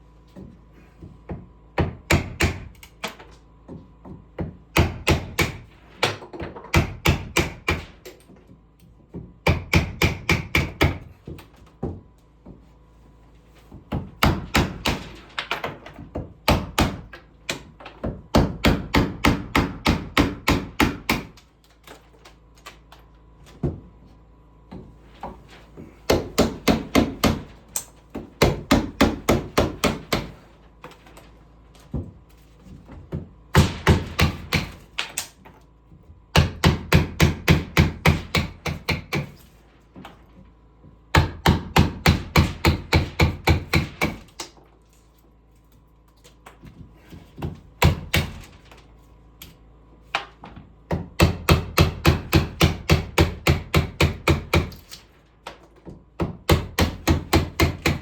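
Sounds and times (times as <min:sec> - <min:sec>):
hammer striking wood: 0:01.3 - 0:02.9, 0:03.7 - 0:08.1, 0:09.1 - 0:12.0, 0:13.9 - 0:21.4, 0:24.7 - 0:30.4, 0:33.1 - 0:35.3, 0:36.3 - 0:39.4, 0:41.1 - 0:44.5, 0:47.4 - 0:48.5, 0:50.9 - 0:54.9, 0:55.8 - 0:58.0.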